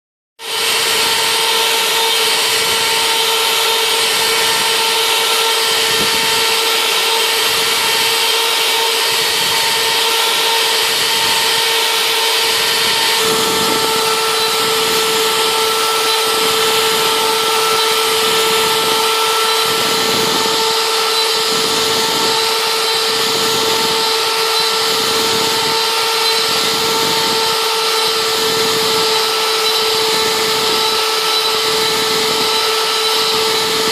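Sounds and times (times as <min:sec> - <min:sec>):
rough foam cutting noise: 0:00.4 - 0:33.9
router spindle high whine: 0:00.4 - 0:33.9.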